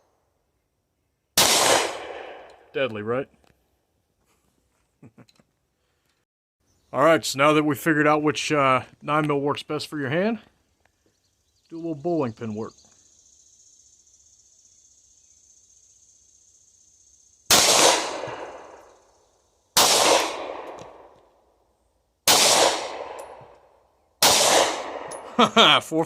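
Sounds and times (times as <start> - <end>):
pistol shots: 1.4 - 2.6, 17.5 - 18.8, 19.8 - 21.1, 22.2 - 23.5, 24.2 - 25.3.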